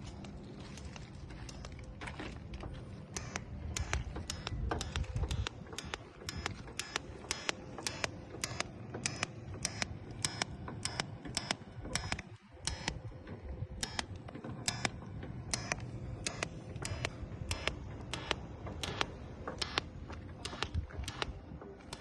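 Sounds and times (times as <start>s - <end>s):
steady low hum: 0.0s - 22.0s
sharp metallic welding clicks: 3.2s - 13.0s, 13.8s - 21.3s.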